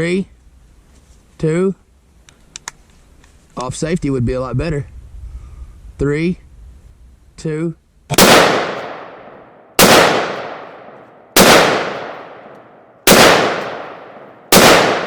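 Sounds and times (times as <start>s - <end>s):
rifle shots with rolling echo: 8.1s - 15.0s.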